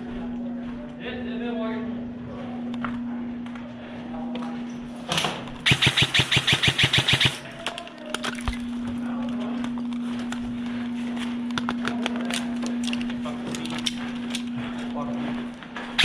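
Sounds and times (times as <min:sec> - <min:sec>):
airsoft gun firing: 0:05.6 - 0:07.6.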